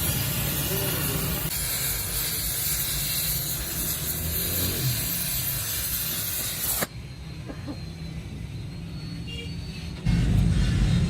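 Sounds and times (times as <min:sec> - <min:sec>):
steady hissing noise: 0:00.0 - 0:07.0.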